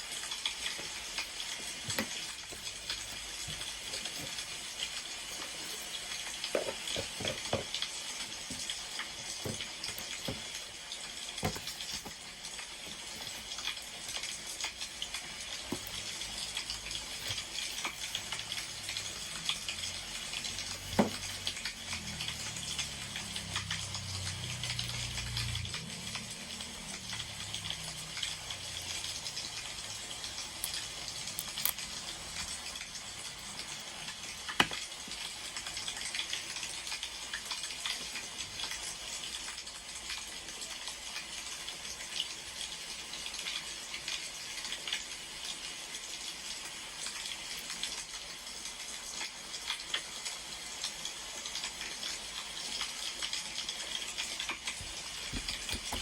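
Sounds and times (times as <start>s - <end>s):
wood fire crackling and popping: 54.4s - 56.0s.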